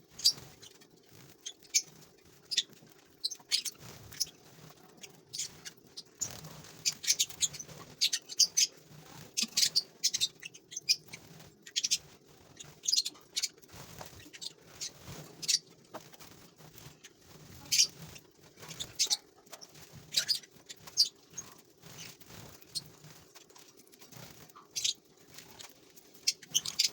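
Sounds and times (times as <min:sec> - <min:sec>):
birds chirping and squeaking: 0:00.0 - 0:26.9.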